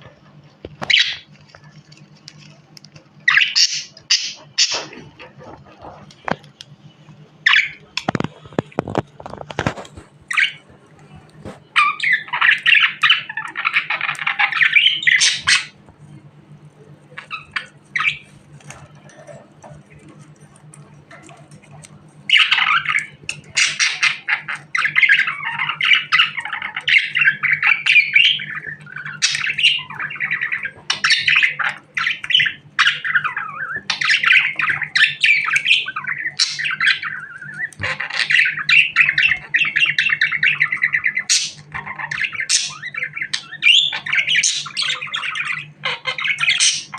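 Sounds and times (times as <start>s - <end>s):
faint low hum: 0.0s - 46.9s
budgerigar chattering: 11.8s - 15.8s, 22.3s - 46.9s.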